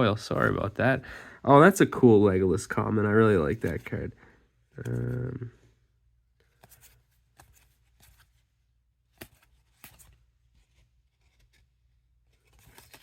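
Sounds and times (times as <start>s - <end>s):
cards flipped by hand: 4.8s - 5.4s, 6.4s - 13.0s.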